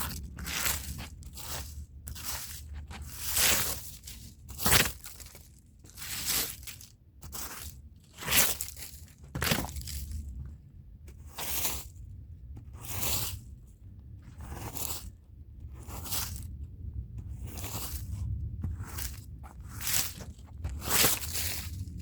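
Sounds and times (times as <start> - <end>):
brush scrubbing a rug: 0.0 - 8.6, 11.2 - 11.9, 12.8 - 13.4, 14.4 - 15.2, 17.4 - 22.0.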